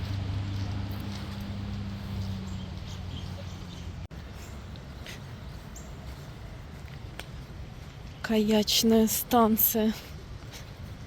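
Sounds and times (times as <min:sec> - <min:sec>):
outdoor background noise: 0:00.0 - 0:11.0.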